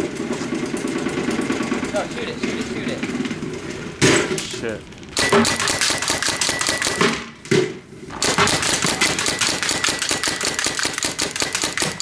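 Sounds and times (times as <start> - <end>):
paintball gun rapid fire: 5.2 - 7.3, 8.1 - 12.0.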